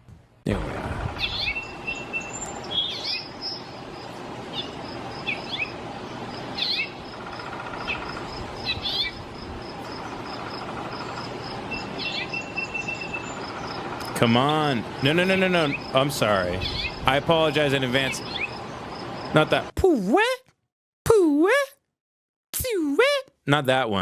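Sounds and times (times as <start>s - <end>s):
bird chirps: 1.2s - 5.8s, 6.5s - 9.2s, 9.9s - 19.4s
insect trill: 1.4s - 19.7s.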